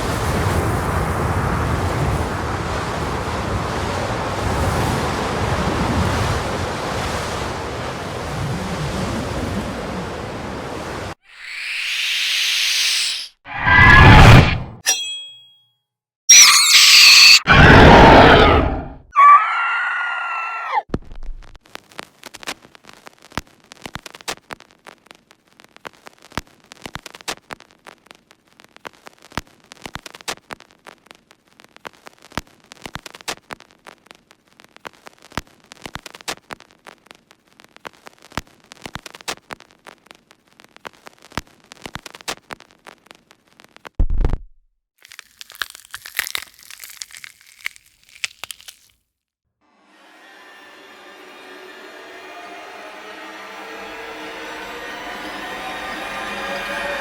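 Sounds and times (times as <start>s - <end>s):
loud scream: 16.3s - 20.9s
descending pitched wail: 16.4s - 20.8s, 49.8s - 57.0s
faint irregular clicks and crackles: 21.6s - 44.0s.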